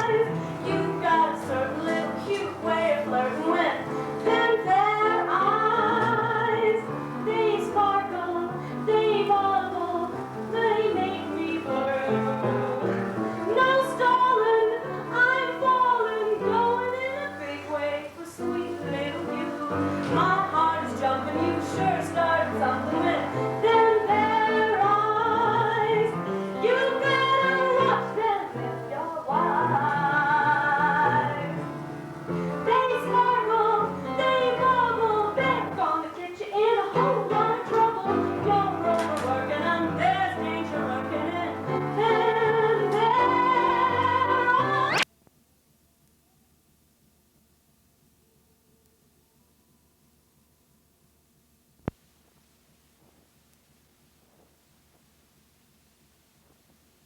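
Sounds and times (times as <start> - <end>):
woman singing with vibrato: 0.0 - 45.1.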